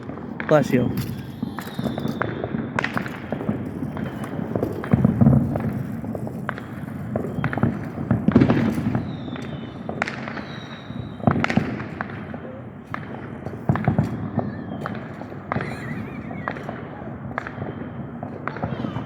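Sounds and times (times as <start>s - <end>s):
fireworks pops and crackles: 0.0s - 19.0s
low firework booms: 0.0s - 19.0s
thin high whistle: 0.8s - 2.8s.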